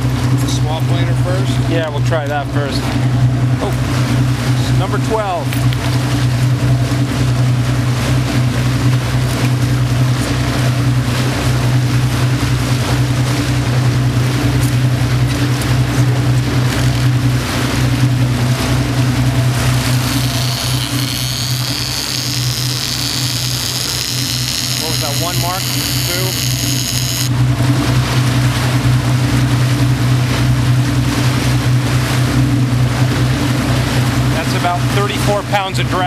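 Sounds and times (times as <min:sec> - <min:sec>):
motorboat engine humming: 0:00.0 - 0:36.0
water noise: 0:00.0 - 0:36.0
high wavering whir: 0:14.6 - 0:29.2.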